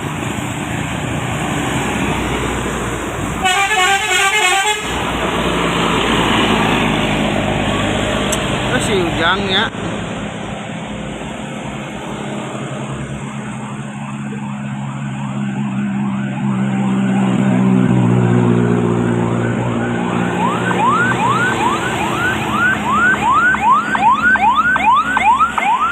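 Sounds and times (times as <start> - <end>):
siren yelping: 13.1 - 25.9.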